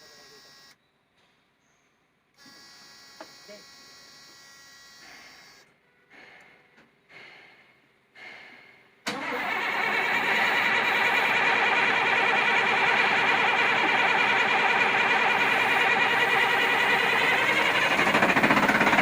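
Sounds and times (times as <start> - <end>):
engine starting and running: 8.2 - 19.0
fuel pump whirring: 8.2 - 19.0.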